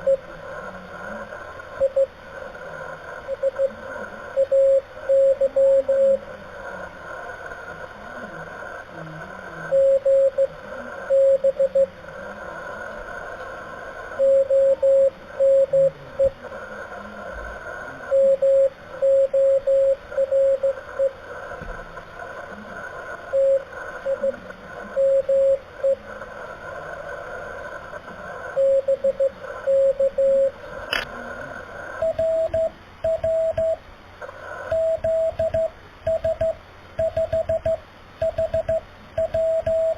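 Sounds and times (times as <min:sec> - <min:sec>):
receiver hiss and static: 0:00.0 - 0:39.9
morse code tone: 0:32.0 - 0:33.8, 0:34.7 - 0:39.9.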